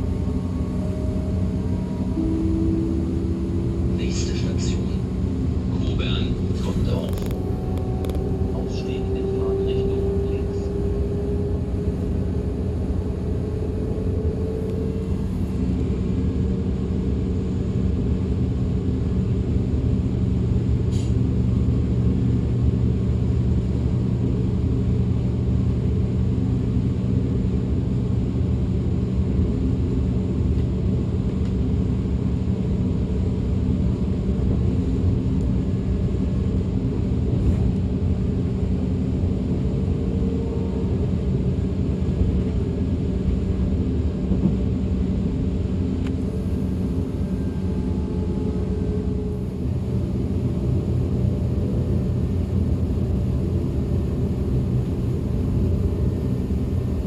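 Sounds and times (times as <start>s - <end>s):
rising electric whine: 0.0s - 4.1s, 6.7s - 16.5s
train rumble from inside: 0.0s - 57.0s.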